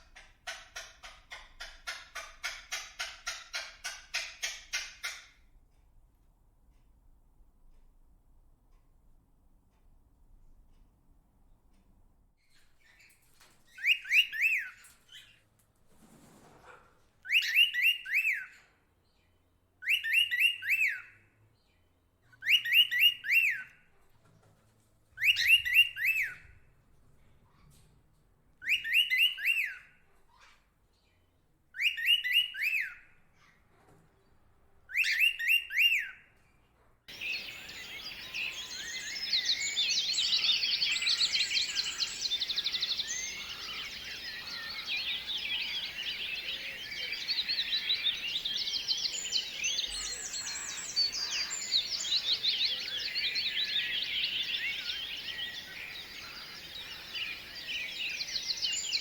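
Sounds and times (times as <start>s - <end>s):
bird whistling song: 13.8s - 15.3s, 17.3s - 18.6s, 19.8s - 21.2s, 22.4s - 23.7s, 25.2s - 26.4s, 28.6s - 29.9s, 31.8s - 33.0s, 34.9s - 36.2s, 37.1s - 59.0s
chorus of many birds: 37.1s - 59.0s.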